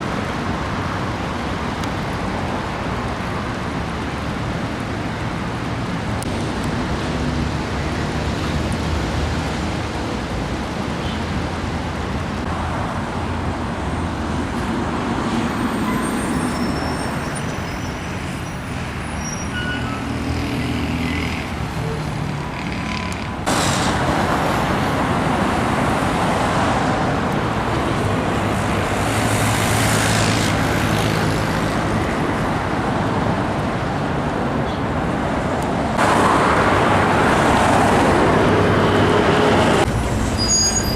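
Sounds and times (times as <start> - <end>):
street traffic passing: 0.0 - 40.9
high squeals: 15.4 - 20.2, 40.2 - 40.9.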